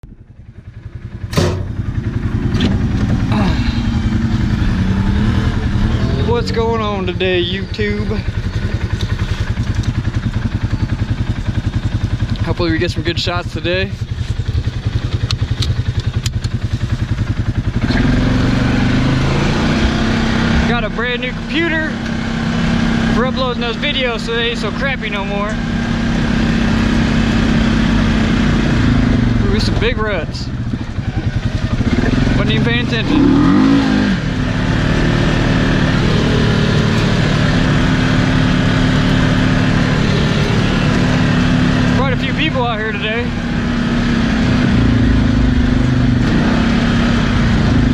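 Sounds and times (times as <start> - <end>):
engine idling and revving: 0.0 - 47.9.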